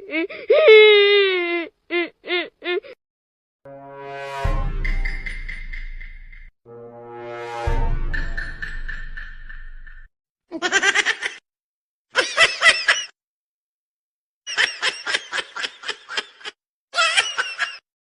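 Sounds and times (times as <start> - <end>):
high-pitched laughter: 10.5 - 11.4, 12.2 - 13.1, 14.5 - 17.8.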